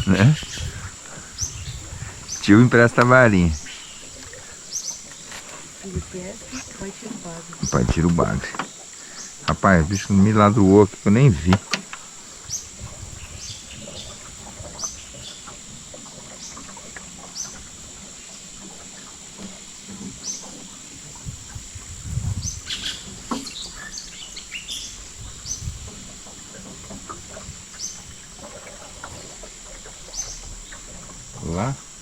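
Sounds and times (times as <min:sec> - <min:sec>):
birds chirping: 0:00.0 - 0:32.0
high-pitched insect drone: 0:00.0 - 0:32.0
knocks and rustles: 0:19.4 - 0:31.4.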